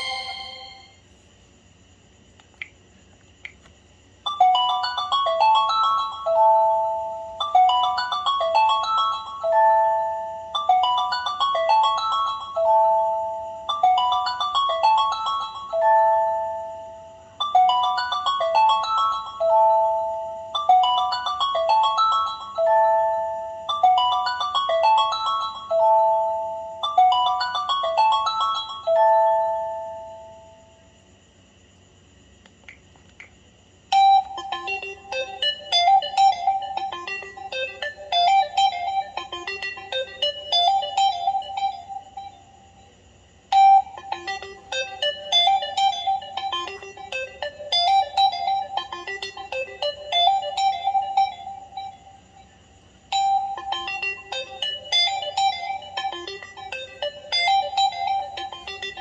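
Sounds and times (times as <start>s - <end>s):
phone ringtone chiming melody: 0.0s - 1.0s, 4.3s - 30.6s.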